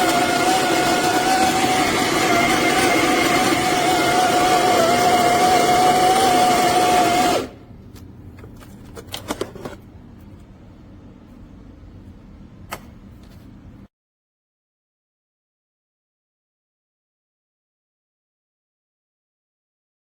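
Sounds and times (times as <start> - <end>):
coffee grinder motor humming: 0.0 - 7.6.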